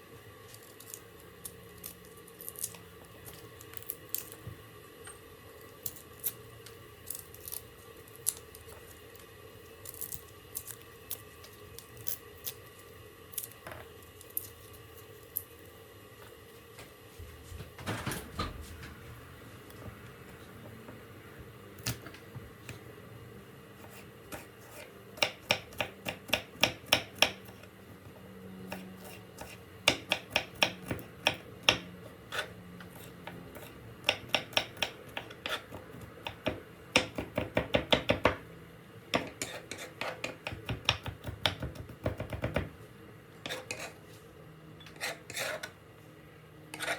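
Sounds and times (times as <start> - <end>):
knife chopping on cutting board: 23.8 - 27.6, 28.7 - 38.4, 39.2 - 42.7.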